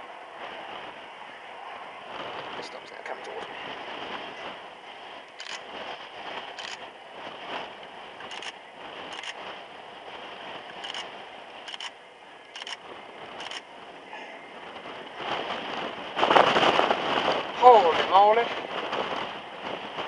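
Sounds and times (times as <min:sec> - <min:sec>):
steady rushing background noise: 0:00.0 - 0:20.0
camera shutter clicking: 0:05.4 - 0:05.6, 0:06.6 - 0:06.8, 0:08.3 - 0:09.4, 0:10.8 - 0:11.1, 0:11.7 - 0:11.9, 0:12.6 - 0:12.8, 0:13.4 - 0:13.6.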